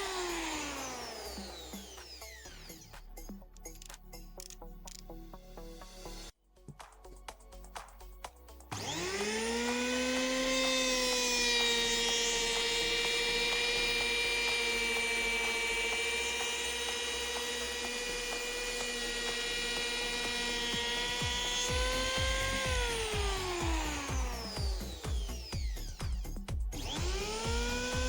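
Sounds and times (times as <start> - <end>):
electric planer motor whining: 0.0 - 2.9, 8.7 - 28.0.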